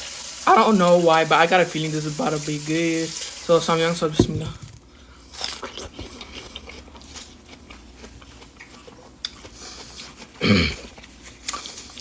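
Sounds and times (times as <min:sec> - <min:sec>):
biting and chewing watermelon: 0:04.6 - 0:12.0.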